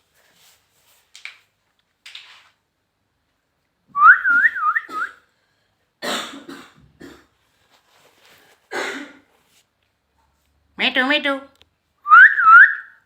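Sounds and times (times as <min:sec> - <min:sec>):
warbling whistle: 0:12.1 - 0:13.0.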